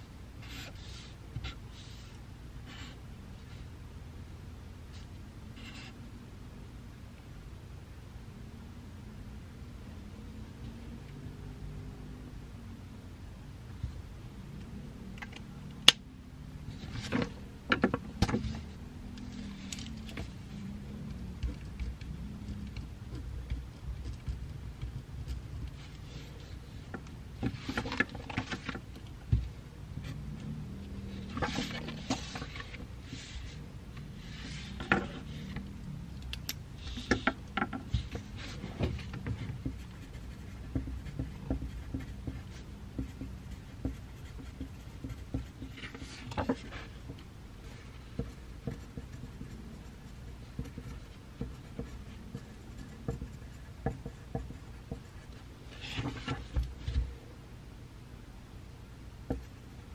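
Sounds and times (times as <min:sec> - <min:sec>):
low steady hum: 0:00.0 - 0:59.9
pencil scratching on paper: 0:05.6 - 0:06.0, 0:36.8 - 0:56.4
pencil tapping: 0:21.1 - 0:25.8, 0:36.9 - 0:47.2, 0:48.1 - 0:55.4, 0:59.3 - 0:59.5.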